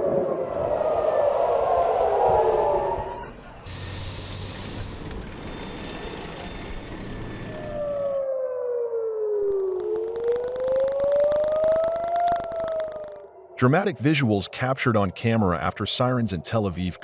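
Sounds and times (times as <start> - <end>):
air-raid siren wailing: 0.0 - 3.6, 6.0 - 13.6
rapid crackle: 9.7 - 13.3.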